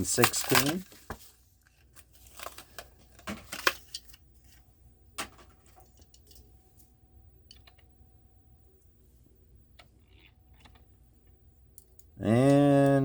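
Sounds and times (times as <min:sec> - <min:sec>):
plastic packaging crackling: 0:00.0 - 0:01.2, 0:01.8 - 0:04.2.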